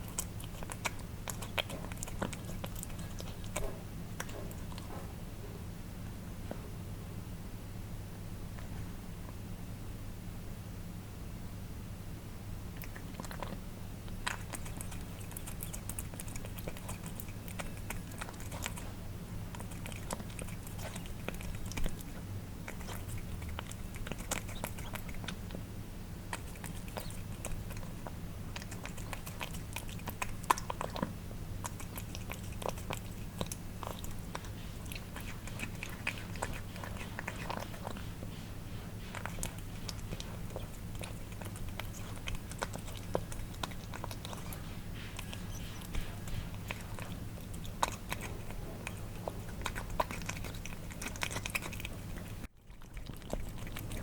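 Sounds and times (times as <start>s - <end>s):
cats eating wet food: 0.0s - 5.2s, 12.7s - 54.0s.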